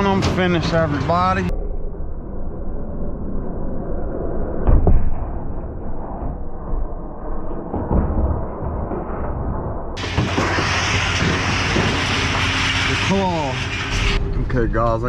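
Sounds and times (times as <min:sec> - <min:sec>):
scrap metal clattering onto pile: 0:10.0 - 0:14.2.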